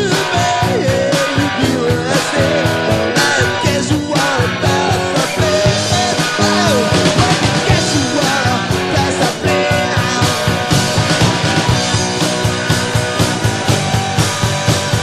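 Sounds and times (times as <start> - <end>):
rock song with guitar and drums: 0.0 - 15.0.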